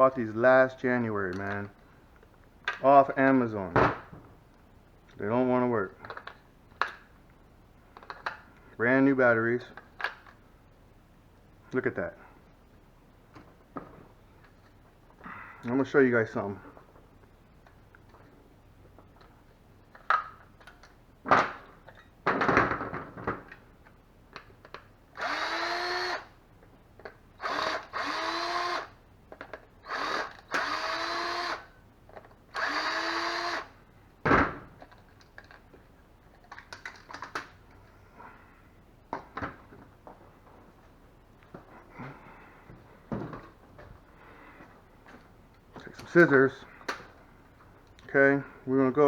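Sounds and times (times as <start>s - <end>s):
small motor spinning up: 25.2s - 26.3s, 29.9s - 31.7s, 32.6s - 33.7s.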